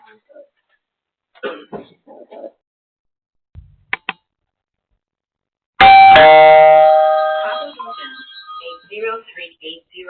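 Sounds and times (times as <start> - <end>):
ding-dong doorbell chime: 5.8 - 8.6.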